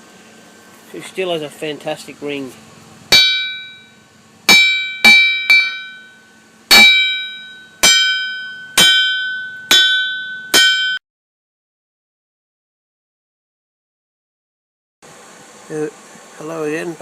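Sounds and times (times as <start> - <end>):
hammer striking anvil: 3.1 - 3.9, 4.5 - 11.0.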